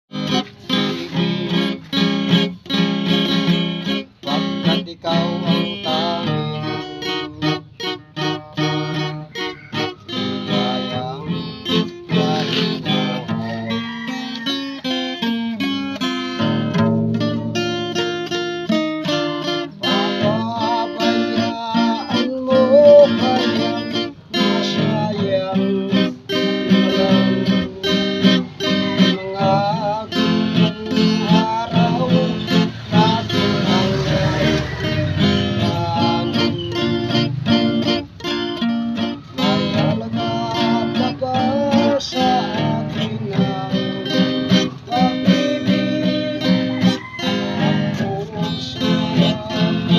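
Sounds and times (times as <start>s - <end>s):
acoustic guitar music: 0.0s - 49.9s.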